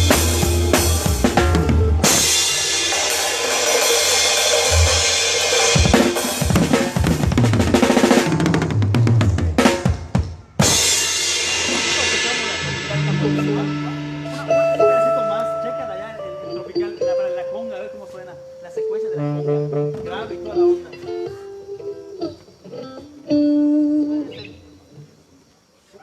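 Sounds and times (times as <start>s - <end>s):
cymbal crash ringing: 0.0s - 6.9s, 10.6s - 16.5s
drum kit playing: 0.0s - 18.0s, 19.2s - 21.0s.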